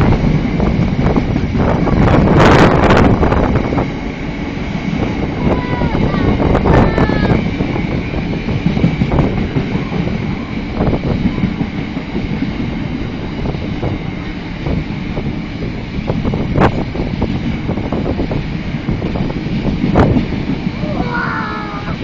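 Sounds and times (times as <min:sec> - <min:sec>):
train rumbling past: 0:00.0 - 0:22.0.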